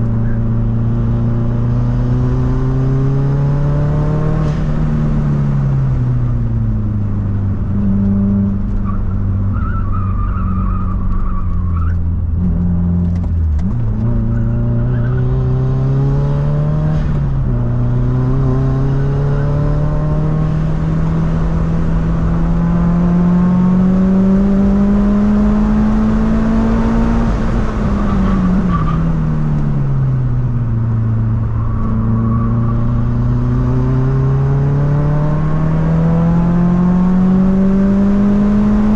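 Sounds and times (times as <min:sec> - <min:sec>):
car engine revving hard: 0:13.6 - 0:28.8, 0:32.0 - 0:38.9.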